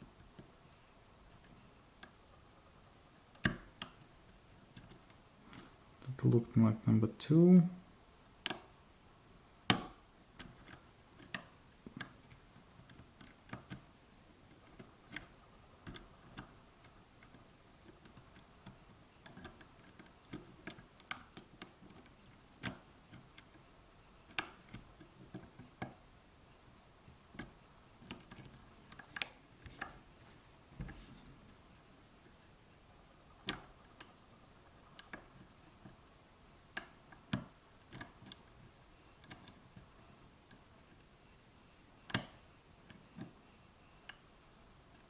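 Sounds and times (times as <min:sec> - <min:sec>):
lock pick clicking in padlock: 0:24.3 - 0:25.9.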